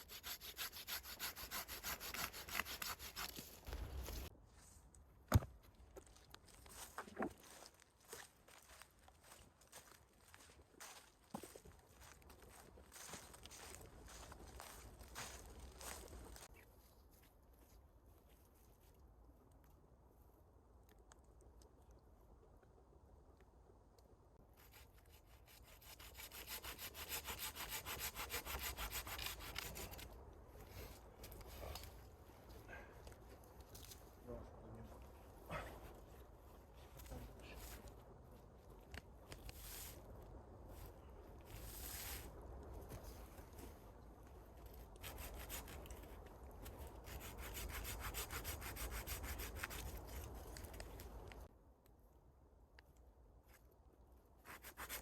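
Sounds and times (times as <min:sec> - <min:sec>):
hand saw cutting wood: 0:00.0 - 0:04.3, 0:24.7 - 0:30.0, 0:47.0 - 0:50.2.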